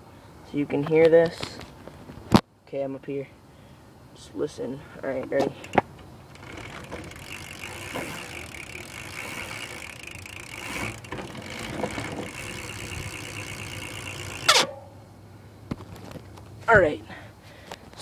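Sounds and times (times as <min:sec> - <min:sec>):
bike hub ratcheting: 0:05.5 - 0:14.7.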